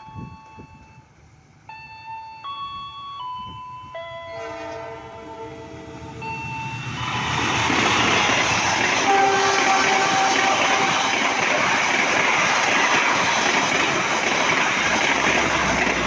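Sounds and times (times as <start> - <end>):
train rumble: 0.0 - 16.0
short chime melody: 1.7 - 7.0
locomotive horn chord: 4.3 - 6.3, 9.0 - 11.4.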